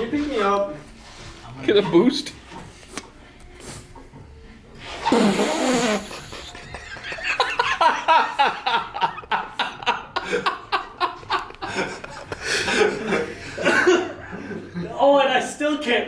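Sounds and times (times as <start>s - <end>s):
people laughing: 6.5s - 14.9s.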